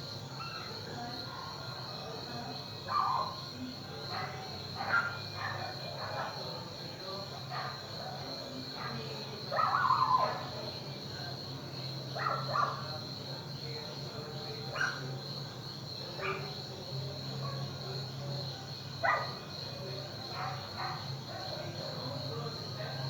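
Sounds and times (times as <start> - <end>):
dog barking: 2.9 - 3.4, 4.1 - 6.4, 8.8 - 10.5, 12.2 - 12.9, 14.7 - 15.1, 16.2 - 16.6, 19.0 - 19.4, 20.3 - 21.7.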